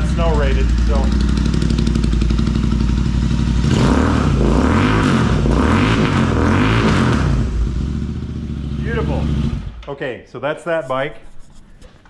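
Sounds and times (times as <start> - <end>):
motorcycle engine idling and revving: 0.0 - 9.8.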